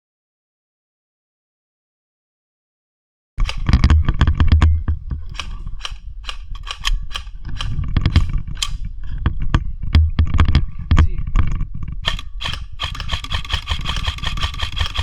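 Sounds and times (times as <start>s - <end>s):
airsoft guns firing: 5.3s - 8.8s, 12.0s - 15.0s.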